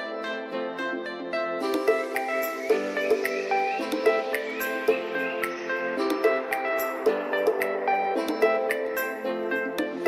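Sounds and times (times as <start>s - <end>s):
plucked-string music: 0.0s - 10.0s.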